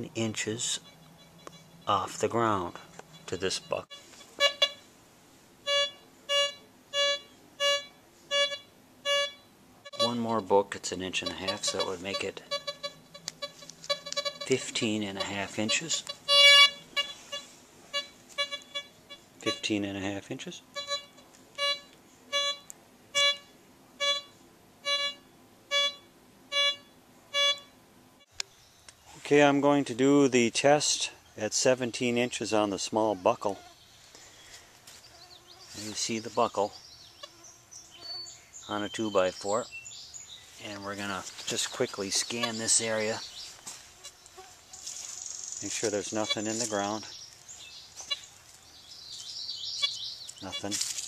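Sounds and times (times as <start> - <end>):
metal detector beeps: 5.7 - 9.4, 16.3 - 17.4, 20.8 - 24.3
metal detector beeping: 5.7 - 10.3, 11.2 - 18.9, 20.8 - 24.3, 24.9 - 27.7.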